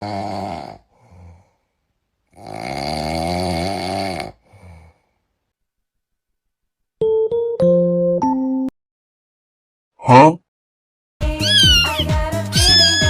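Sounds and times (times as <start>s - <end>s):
loud rattling snoring: 0.0s - 0.8s, 2.3s - 4.8s
quiet breath out: 0.8s - 1.8s, 4.4s - 5.3s.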